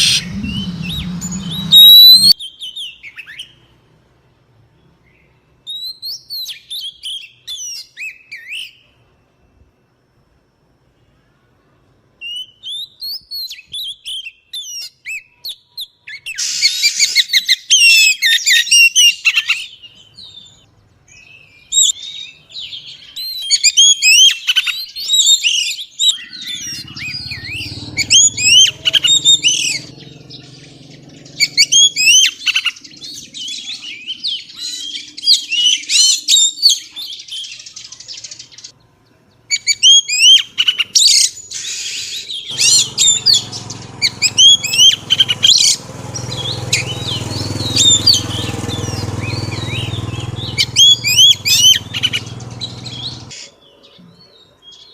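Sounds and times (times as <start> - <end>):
bird chirping and whistling: 0.0 - 3.5, 23.2 - 30.8, 31.4 - 37.2, 39.5 - 53.4.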